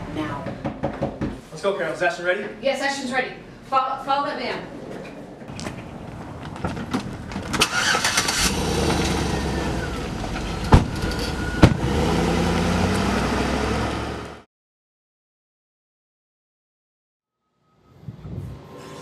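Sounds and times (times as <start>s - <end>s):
car engine starting and running: 5.5s - 14.4s.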